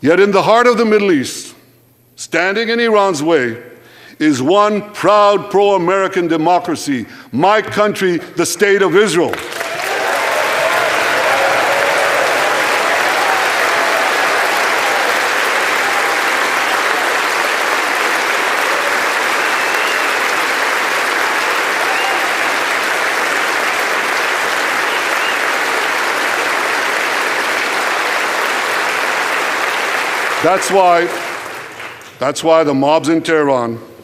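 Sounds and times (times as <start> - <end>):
large audience applauding: 9.3 - 32.2.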